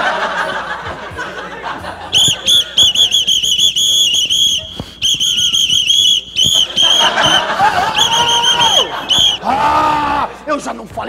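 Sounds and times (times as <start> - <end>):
pea whistle toots: 2.1 - 9.5.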